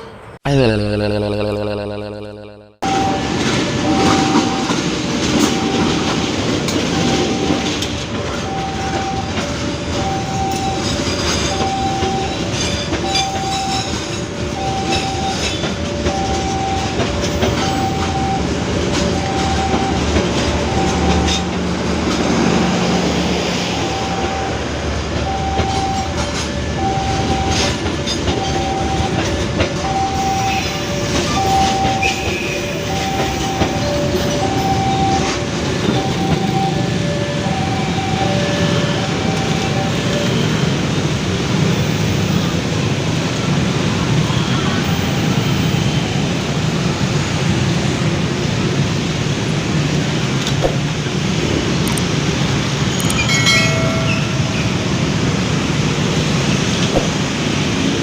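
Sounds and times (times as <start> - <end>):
repeating two-pitch tone: 0.5 - 4.8
train clattering on rails: 2.9 - 58.0.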